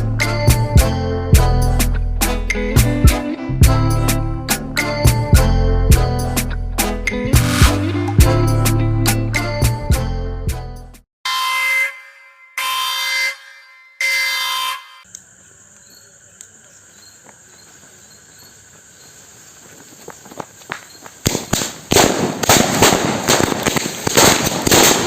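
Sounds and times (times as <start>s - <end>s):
firecrackers bursting: 7.4s - 7.9s, 20.6s - 25.0s
short horn-like beeps: 11.2s - 15.0s.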